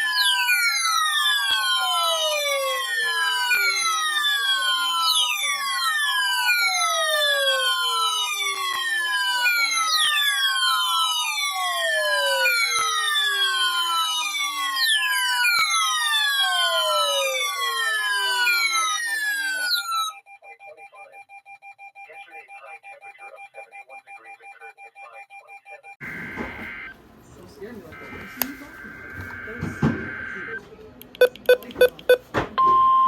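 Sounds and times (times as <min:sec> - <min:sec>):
warning siren wailing: 0:00.0 - 0:20.8, 0:26.0 - 0:26.9, 0:27.9 - 0:30.6.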